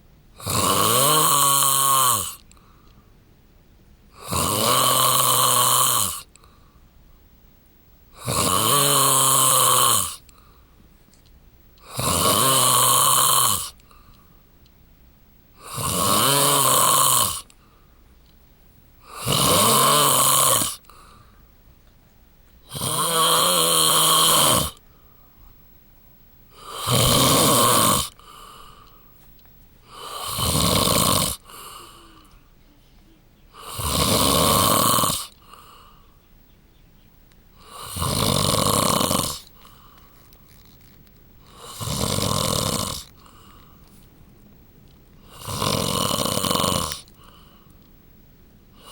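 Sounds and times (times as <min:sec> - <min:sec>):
quiet breaths: 0:00.0 - 0:48.9
man snoring loudly: 0:00.4 - 0:02.4, 0:04.2 - 0:06.3, 0:08.2 - 0:10.3, 0:11.8 - 0:13.8, 0:15.6 - 0:17.5, 0:19.0 - 0:20.8, 0:22.7 - 0:24.8, 0:26.5 - 0:28.5, 0:29.8 - 0:32.1, 0:33.6 - 0:35.8, 0:37.6 - 0:39.6, 0:41.5 - 0:43.4, 0:45.2 - 0:47.4.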